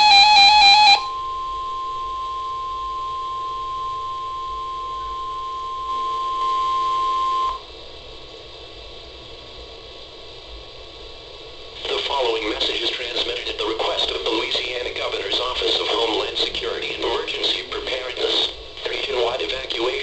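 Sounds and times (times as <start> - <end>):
steady emergency alert tone: 0.0 - 7.6
faint hiss: 5.0 - 20.0.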